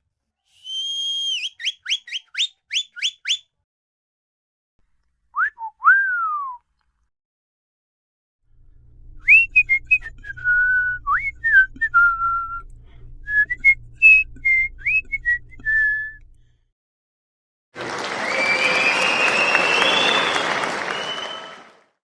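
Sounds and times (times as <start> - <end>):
person whistling a tune: 0.5 - 3.4, 5.4 - 6.6, 9.2 - 16.2, 18.3 - 21.6
faint low hum: 8.5 - 16.6.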